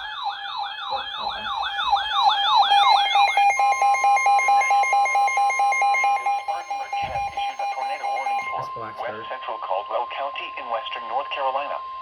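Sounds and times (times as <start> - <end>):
electronic siren alarm whooping: 0.0 - 8.6
rapid pulsed beeping: 0.0 - 8.7.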